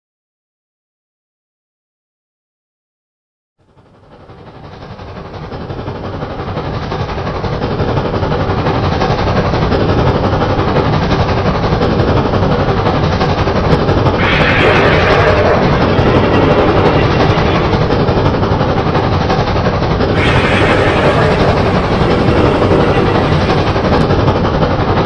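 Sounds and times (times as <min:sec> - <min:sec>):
steam train chuffing and clattering: 0:03.7 - 0:25.0
steam hiss: 0:14.2 - 0:18.7, 0:20.1 - 0:24.5.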